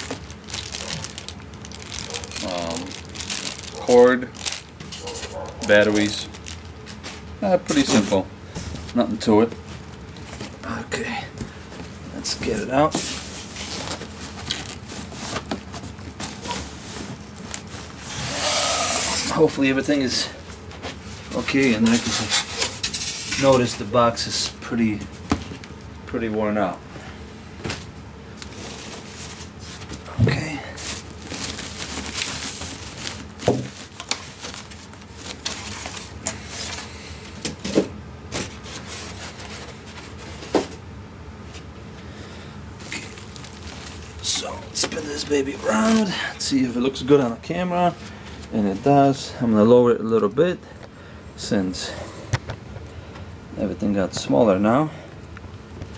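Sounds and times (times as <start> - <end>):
small clicks and crinkles: 0.0 - 7.3, 13.6 - 17.9, 30.8 - 36.9
packaging rustling: 0.0 - 9.0, 11.4 - 23.8, 28.4 - 36.9, 38.3 - 40.7, 42.7 - 48.5
unit scraping against cardboard box: 16.2 - 19.4.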